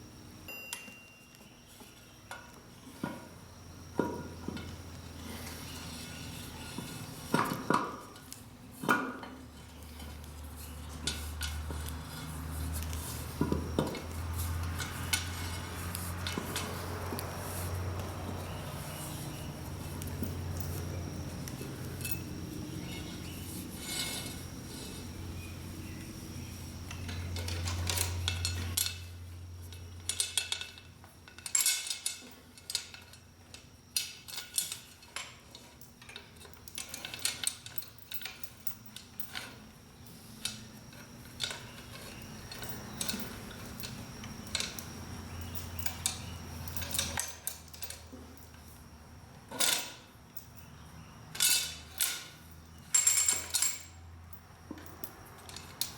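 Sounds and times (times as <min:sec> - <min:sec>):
low machine hum: 0:00.0 - 0:34.5
metal parts clinking: 0:05.4 - 0:17.7, 0:18.3 - 0:25.6, 0:26.4 - 0:48.8, 0:49.5 - 0:55.9.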